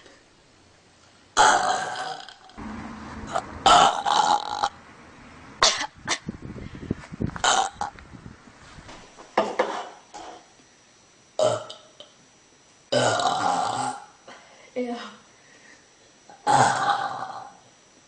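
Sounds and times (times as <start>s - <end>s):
person belching: 1.4s - 2.5s, 3.6s - 4.8s, 7.4s - 7.9s, 11.4s - 11.9s, 12.9s - 14.2s, 16.3s - 17.6s.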